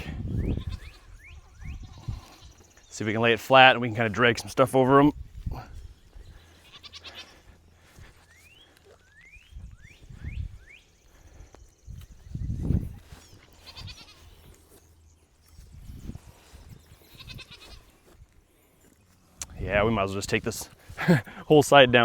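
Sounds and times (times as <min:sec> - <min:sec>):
goats bleating: 0:06.4 - 0:07.9, 0:13.4 - 0:14.4, 0:17.0 - 0:18.1.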